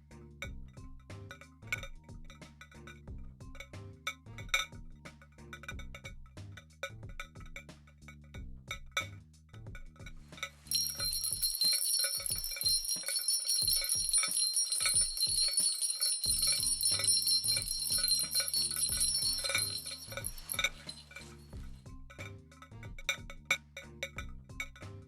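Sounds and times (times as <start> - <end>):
low background music: 0.0 - 25.0
sleigh bells jingling: 10.6 - 21.7.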